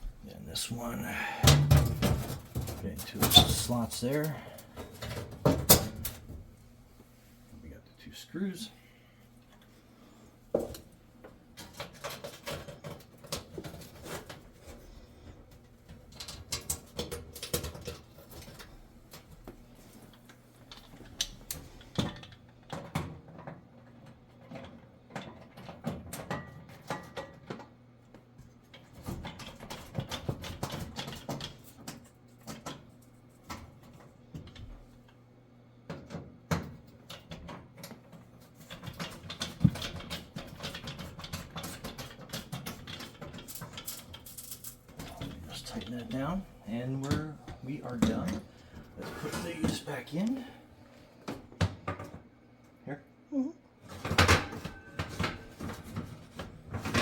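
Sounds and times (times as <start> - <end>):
metal oven trays being handled: 1.1 - 6.3.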